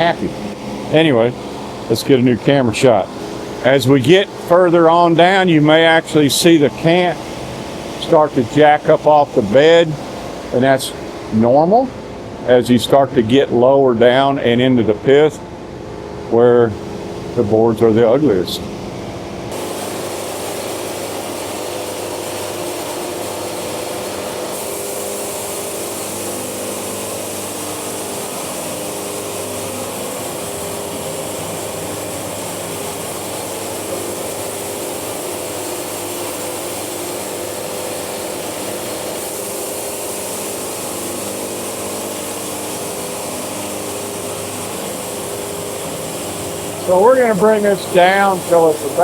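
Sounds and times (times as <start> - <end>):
sawmill engine drone: 0.0 - 49.0
band blade sawing log: 19.5 - 49.0.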